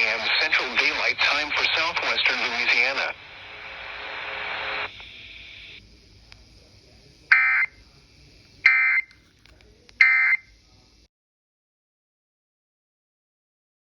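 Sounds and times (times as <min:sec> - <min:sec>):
radio hiss: 0:00.0 - 0:11.1
electronic data bursts: 0:07.3 - 0:07.8.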